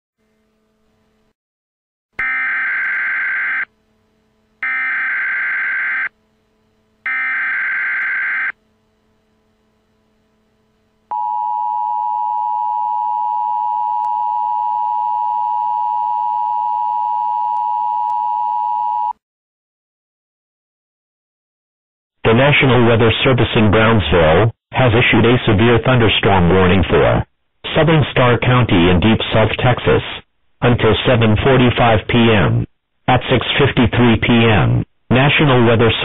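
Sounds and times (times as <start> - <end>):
buzzing data bursts: 4.6 - 6.1.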